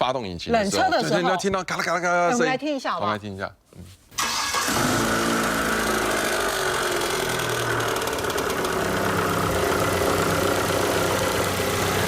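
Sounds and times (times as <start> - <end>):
car engine idling with valve clatter: 6.0 - 12.0.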